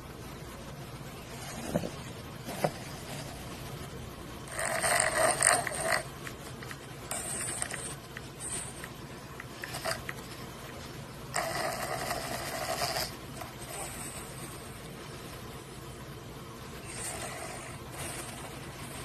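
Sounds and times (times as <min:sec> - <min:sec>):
loud rasping snoring: 0:04.5 - 0:06.1, 0:11.4 - 0:14.2, 0:16.9 - 0:19.0.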